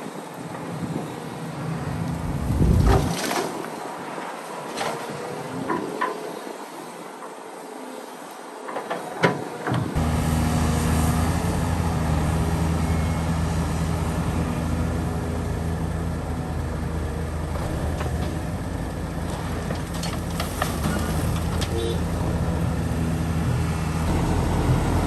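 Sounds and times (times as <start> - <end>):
diesel engine running: 10.0 - 25.0.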